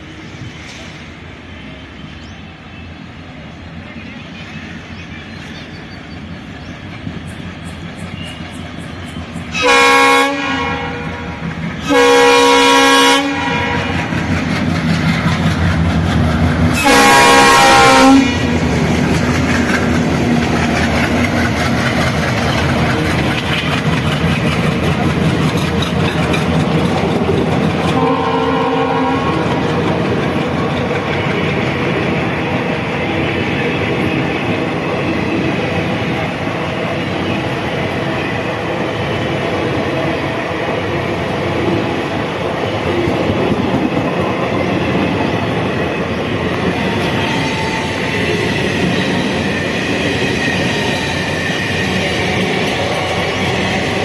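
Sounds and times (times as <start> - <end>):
train rolling noise: 0.0 - 54.0
diesel locomotive horn: 9.5 - 14.2, 16.7 - 18.8, 27.8 - 29.7, 46.7 - 48.4.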